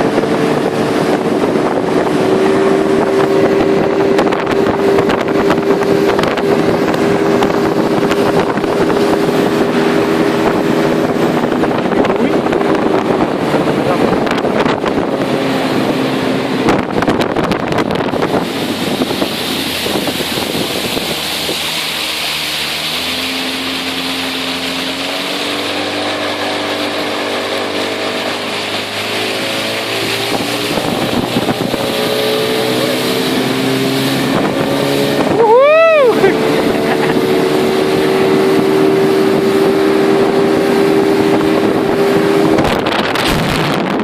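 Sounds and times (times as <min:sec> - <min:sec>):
outboard motor running: 0:00.0 - 0:44.0
water rushing: 0:00.0 - 0:44.0
wind: 0:00.0 - 0:44.0.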